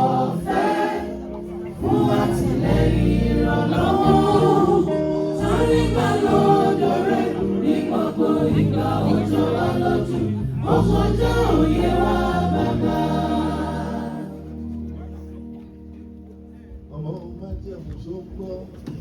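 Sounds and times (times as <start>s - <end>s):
choir singing gospel song: 0.0s - 14.8s
instrumental accompaniment: 0.0s - 16.9s
sustained low bass notes: 0.0s - 17.9s.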